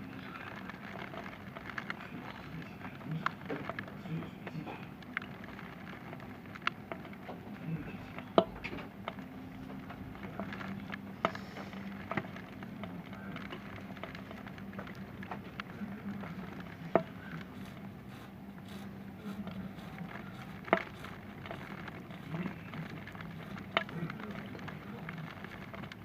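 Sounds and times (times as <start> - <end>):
rain falling: 0.0 - 26.0
steady low hum: 0.0 - 26.0
drops tapping on hard surface: 8.3 - 9.2.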